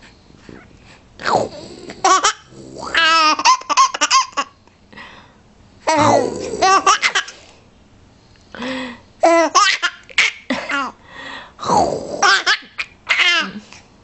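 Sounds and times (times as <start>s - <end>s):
young child laughing: 12.2s - 13.7s.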